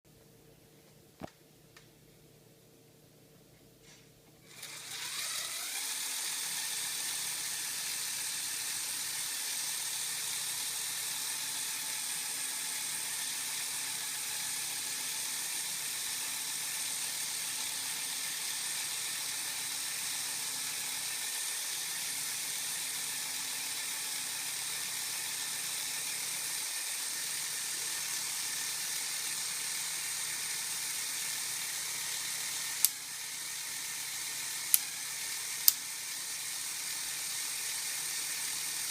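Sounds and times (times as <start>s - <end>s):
electric motor and gears whirring: 4.4s - 38.9s
sharp click: 35.6s - 35.8s.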